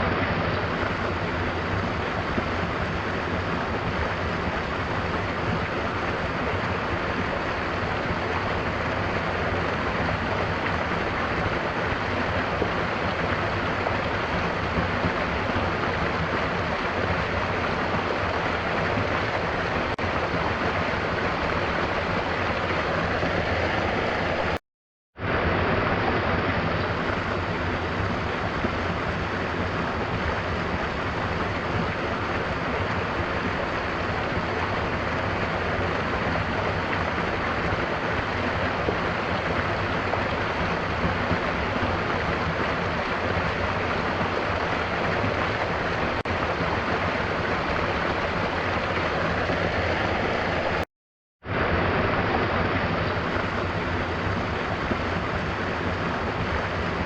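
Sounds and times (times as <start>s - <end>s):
rain: 0.0s - 24.6s, 25.2s - 57.0s
waterfall rushing: 0.0s - 24.6s, 25.2s - 50.9s, 51.5s - 57.0s.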